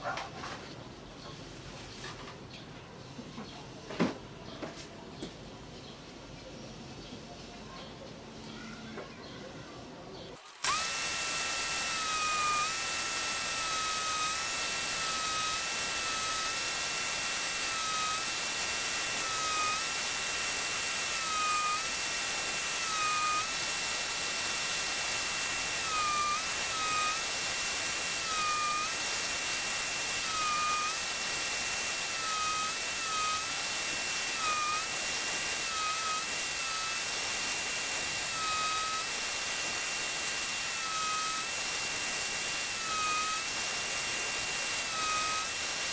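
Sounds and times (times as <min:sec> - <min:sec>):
electric grinder whining on steel: 0:10.4 - 0:45.9.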